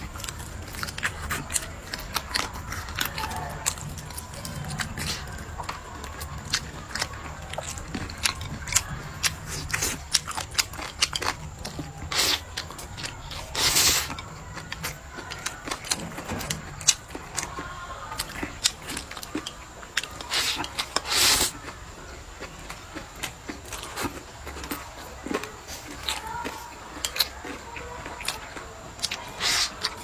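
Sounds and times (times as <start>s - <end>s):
wet chewing clicks: 0.0s - 30.0s
loud sucking slurps: 13.5s - 14.2s, 20.3s - 21.5s, 29.4s - 29.8s
lip smacks: 23.2s - 30.0s.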